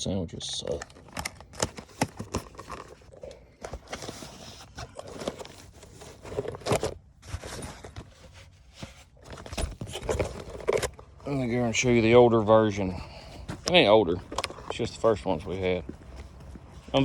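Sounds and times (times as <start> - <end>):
rustling of handled objects: 0.3 - 17.0
clicks and knocks of handling: 0.6 - 8.2, 8.8 - 11.1, 13.4 - 15.2.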